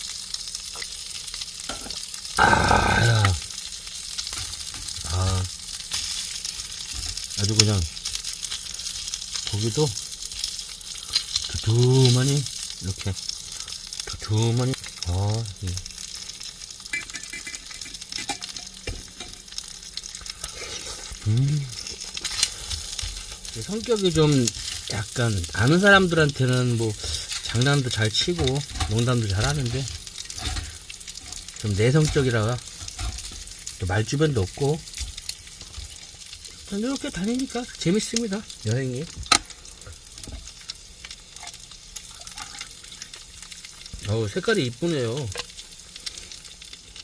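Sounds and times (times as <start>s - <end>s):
meat sizzling on a grill plate: 0.0s - 47.0s
man exclaiming: 2.4s - 3.4s
man humming briefly: 2.4s - 3.4s.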